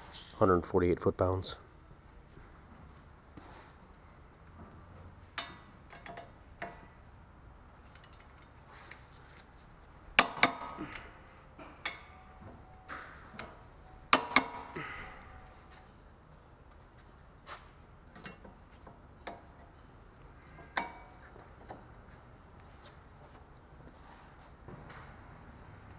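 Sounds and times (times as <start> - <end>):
wrench ratcheting clicks: 7.8 - 9.5.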